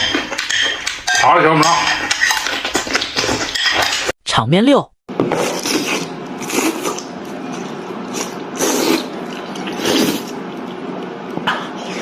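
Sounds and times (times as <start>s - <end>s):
person slurping and chewing: 2.0s - 4.1s, 5.2s - 12.0s.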